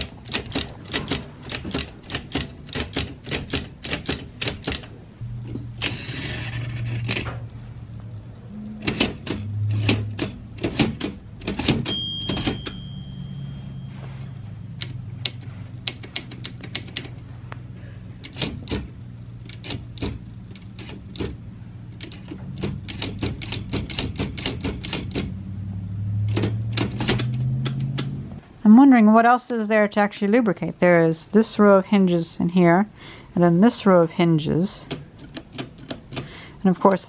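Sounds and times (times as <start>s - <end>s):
typewriter key clacks: 0.0s - 4.9s, 8.8s - 12.7s, 18.2s - 21.4s, 22.0s - 25.3s, 26.3s - 28.1s, 34.9s - 36.3s
typewriter margin bell ring: 11.8s - 14.4s.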